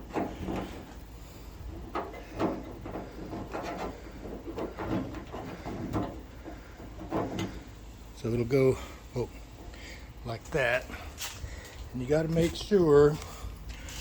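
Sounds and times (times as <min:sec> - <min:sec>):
small metal knocks and scrapes: 0:00.0 - 0:01.0, 0:01.6 - 0:07.8.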